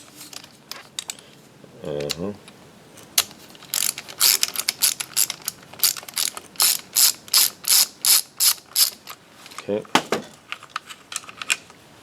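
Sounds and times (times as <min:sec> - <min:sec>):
ratcheting screwdriver clicking: 0:03.6 - 0:09.2.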